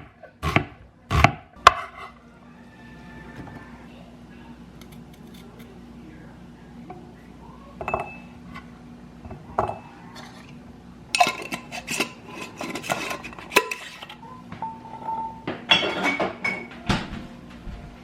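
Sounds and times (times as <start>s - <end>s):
faint steady hum: 0.0s - 18.0s
dishes and cutlery clattering: 11.1s - 17.0s.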